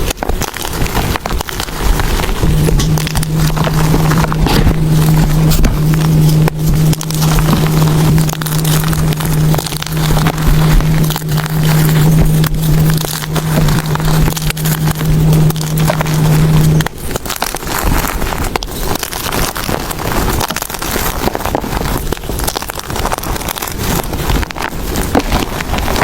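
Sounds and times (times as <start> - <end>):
chalk crunching and crackling: 0.0 - 26.0
low hum: 0.0 - 26.0.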